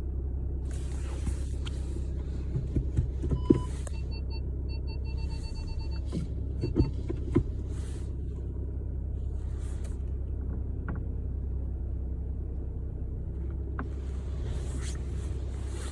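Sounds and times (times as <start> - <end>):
car engine idling: 0.0 - 15.9
steering creaks: 0.7 - 4.1, 5.2 - 8.1, 13.4 - 15.9.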